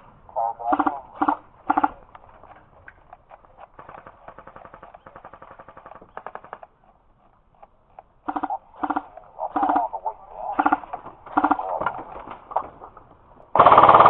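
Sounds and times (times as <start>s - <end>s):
airsoft guns firing: 0.7s - 2.3s, 3.6s - 6.8s, 8.2s - 12.8s, 13.5s - 14.0s.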